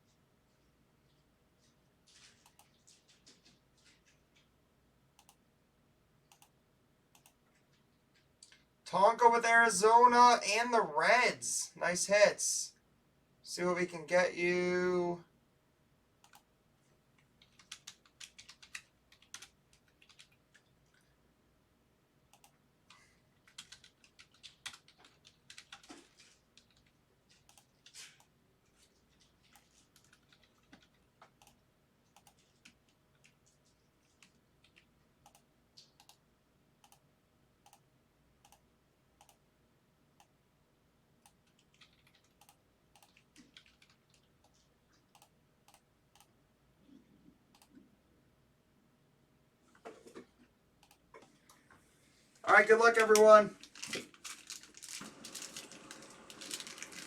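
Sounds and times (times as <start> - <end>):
faint keyboard typing: 0.0 - 5.5, 6.2 - 8.8, 16.2 - 16.5, 17.1 - 21.2, 22.2 - 39.5, 40.1 - 40.4, 41.2 - 47.9, 49.7 - 51.8, 52.4 - 57.0
mouse clicks: 6.3 - 6.5, 38.4 - 38.6, 39.2 - 39.4.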